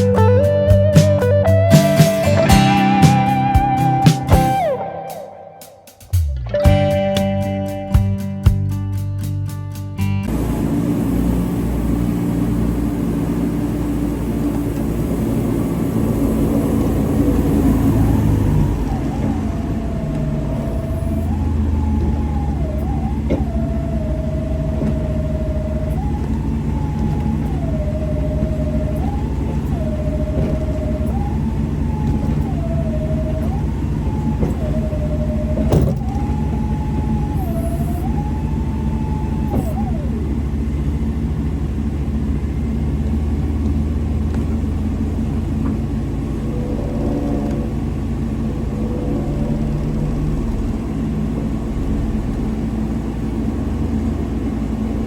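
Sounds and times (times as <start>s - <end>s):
engine running: 0.0s - 5.1s, 10.2s - 55.0s
two-tone siren wailing: 10.4s - 41.2s, 46.0s - 52.7s.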